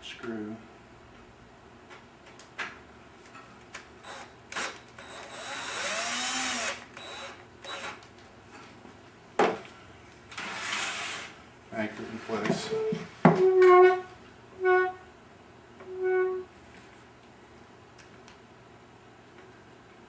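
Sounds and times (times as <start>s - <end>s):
electric screwdriver motor: 4.0s - 8.0s.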